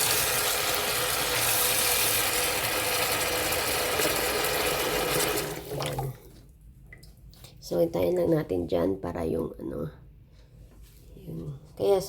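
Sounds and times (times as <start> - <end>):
tap water running into sink: 0.0 - 7.1.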